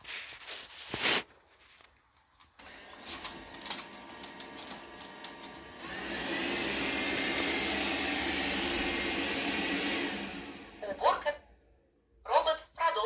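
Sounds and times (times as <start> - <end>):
robot vacuum whirring: 2.6 - 11.4.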